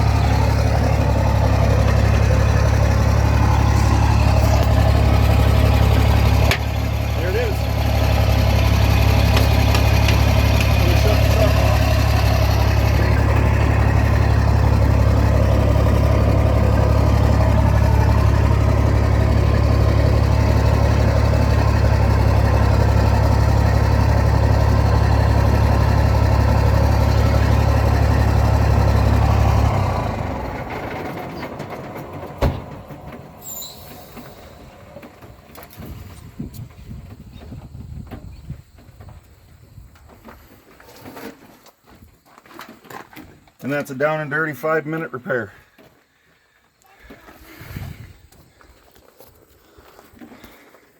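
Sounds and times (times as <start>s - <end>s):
truck diesel engine idling: 0.0s - 37.4s.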